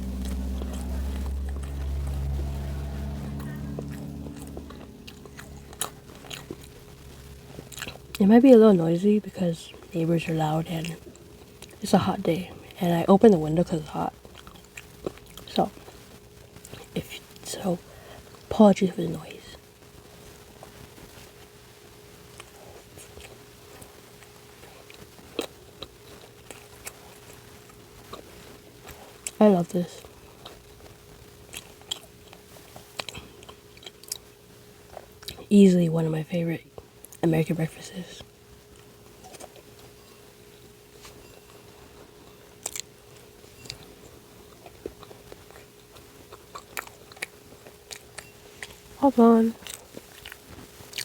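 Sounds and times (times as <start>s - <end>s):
faint steady hum: 0.0s - 51.0s
chewing and biting sandwich: 44.6s - 48.9s, 49.6s - 51.0s.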